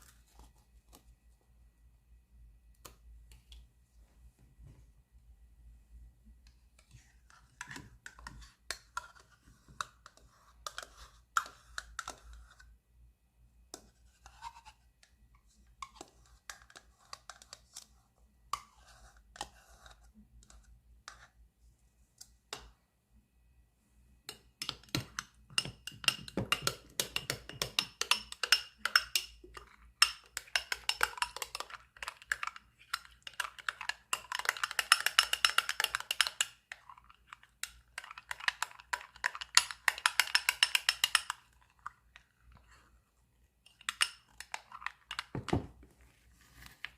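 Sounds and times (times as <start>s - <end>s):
utensil clicking against a bowl: 24.3s - 41.5s.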